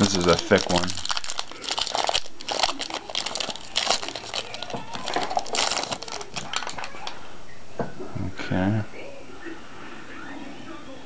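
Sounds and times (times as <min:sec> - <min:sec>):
wrapper crinkling as torn open: 0:00.0 - 0:07.2.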